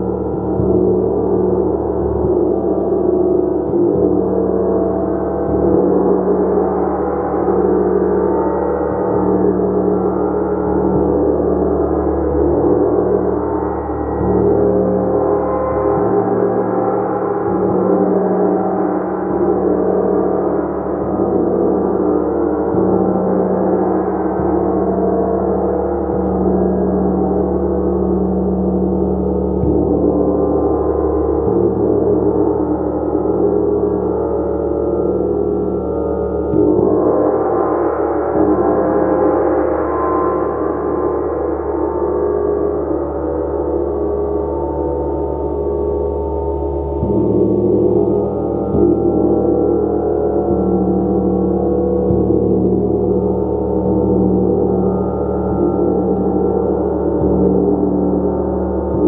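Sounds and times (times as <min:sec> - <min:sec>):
gong sustained wash: 0:00.0 - 0:59.0.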